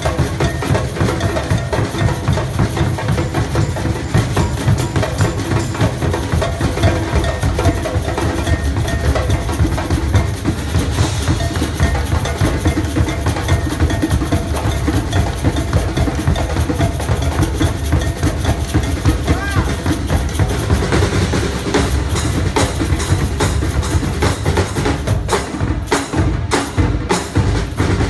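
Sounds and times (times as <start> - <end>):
deep drums: 0.0 - 28.0
percussion ensemble drumming: 0.0 - 28.0.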